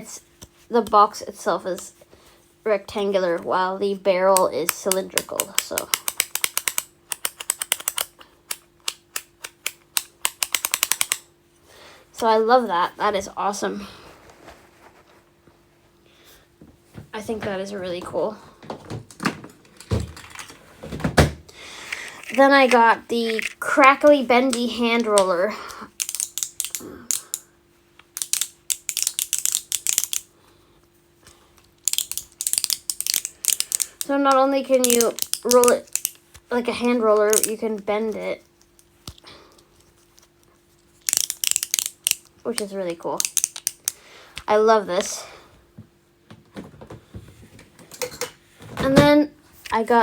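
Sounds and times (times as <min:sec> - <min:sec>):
fidget toy switch clicking: 0:04.4 - 0:11.3, 0:26.0 - 0:27.4, 0:34.8 - 0:36.2, 0:41.1 - 0:44.0.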